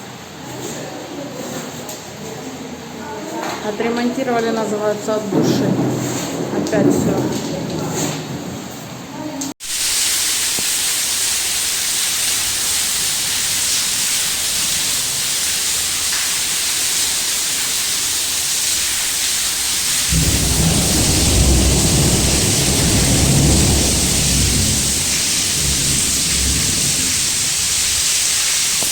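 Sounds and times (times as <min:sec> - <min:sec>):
rushing water hiss: 0:09.6 - 0:28.9.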